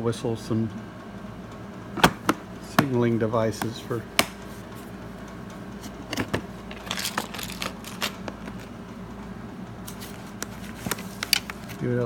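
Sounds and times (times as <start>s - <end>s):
small gear rattling in a box: 6.7s - 8.7s.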